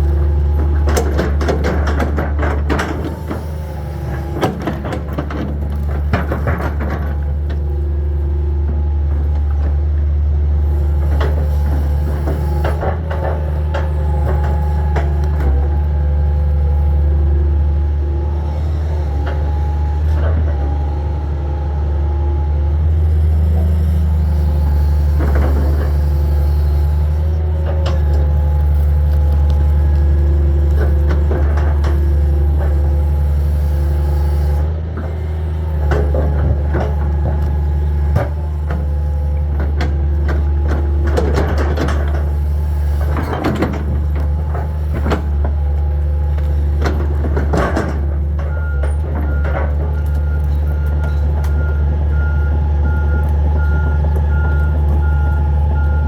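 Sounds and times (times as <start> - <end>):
excavator diesel engine running: 0.0 - 56.0.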